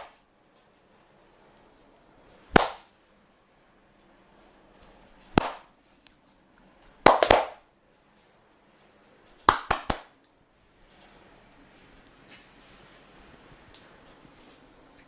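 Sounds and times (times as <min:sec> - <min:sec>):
hands slapping body: 0:02.5 - 0:02.9, 0:05.3 - 0:05.7, 0:07.0 - 0:07.6, 0:09.4 - 0:10.2.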